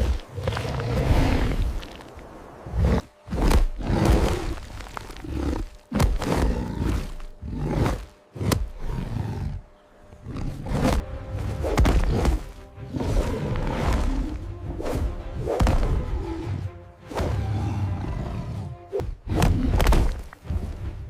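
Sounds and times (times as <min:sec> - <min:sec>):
lions roaring: 0:02.7 - 0:09.6, 0:10.2 - 0:11.0.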